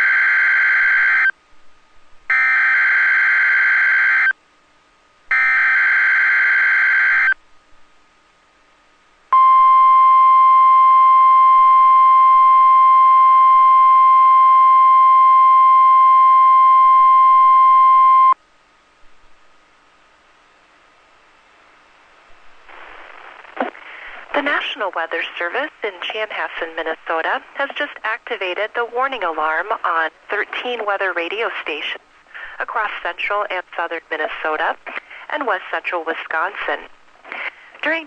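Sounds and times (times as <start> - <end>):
steady alarm tone: 2.3 - 4.3, 5.3 - 7.4, 9.4 - 18.4.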